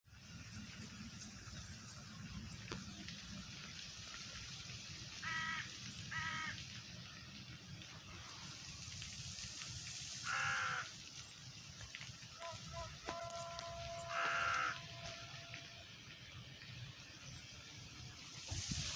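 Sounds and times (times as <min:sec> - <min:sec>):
running water rushing: 0:00.1 - 0:18.9
crow cawing: 0:05.2 - 0:06.6, 0:10.2 - 0:11.0, 0:12.3 - 0:15.7.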